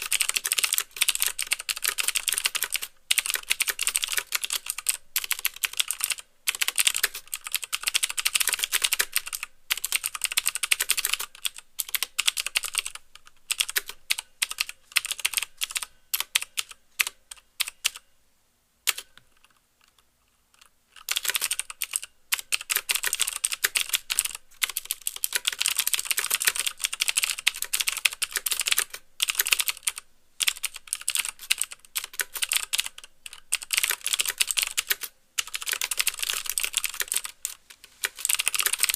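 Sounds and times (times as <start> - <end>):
clicky mechanical keyboard typing: 0.0 - 18.0, 18.9 - 38.9.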